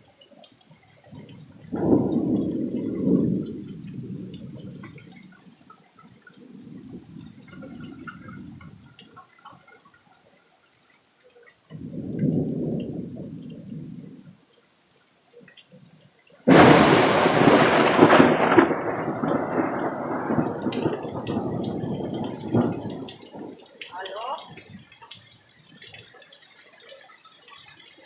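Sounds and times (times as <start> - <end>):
faint rain patter: 0.0 - 28.0
thunder rumbling: 1.1 - 9.2, 11.8 - 14.4, 16.5 - 24.9.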